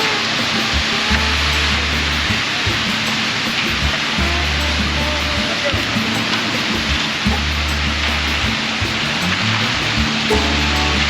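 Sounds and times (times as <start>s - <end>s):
music with low bass line: 0.0s - 11.0s.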